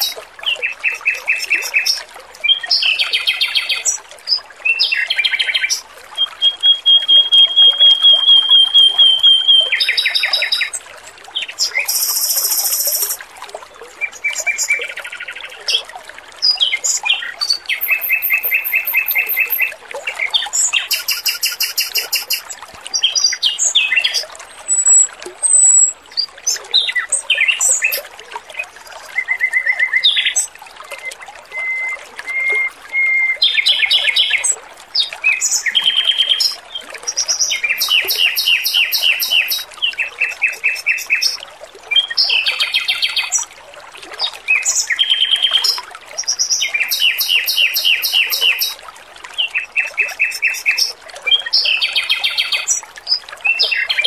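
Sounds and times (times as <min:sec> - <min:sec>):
trickling water: 0:00.0 - 0:54.0
robin singing trilled phrases: 0:04.9 - 0:10.8, 0:11.6 - 0:13.2, 0:17.5 - 0:19.7, 0:20.8 - 0:22.6, 0:23.2 - 0:26.0, 0:37.2 - 0:41.4, 0:46.4 - 0:48.8.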